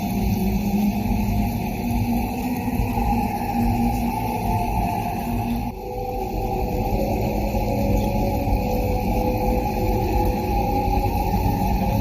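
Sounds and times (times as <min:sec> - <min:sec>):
dark ambient drone: 0:00.0 - 0:12.0.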